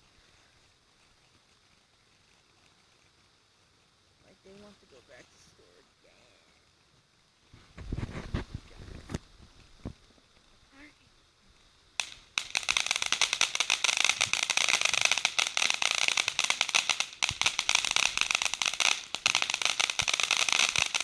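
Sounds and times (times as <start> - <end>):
firework crackling: 0.0 - 21.0
firework pop: 7.6 - 10.1, 12.0 - 15.6, 16.3 - 21.0.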